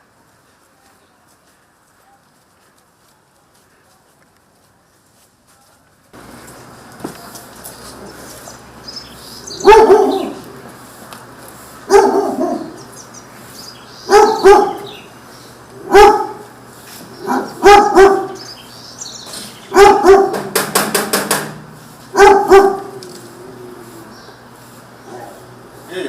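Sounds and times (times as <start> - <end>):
dog barking: 9.5 - 10.5, 11.9 - 12.8, 14.1 - 15.0, 15.8 - 16.5, 17.2 - 18.4, 19.7 - 20.5, 22.1 - 23.0.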